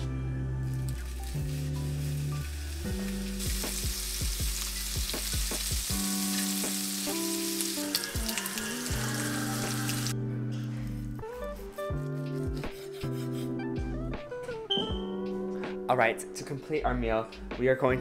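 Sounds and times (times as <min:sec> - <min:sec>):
food sizzling in a pan: 0:00.6 - 0:10.2.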